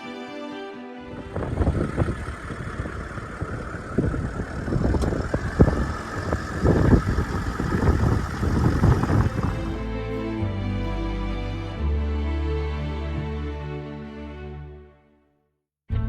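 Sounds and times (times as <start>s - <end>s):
car road and engine noise: 1.1s - 11.8s.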